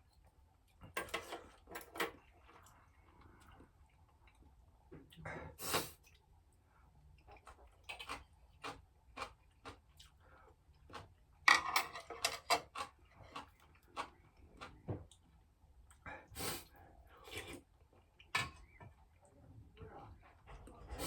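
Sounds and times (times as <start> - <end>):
crunchy chewing: 7.2 - 11.2, 12.6 - 15.2.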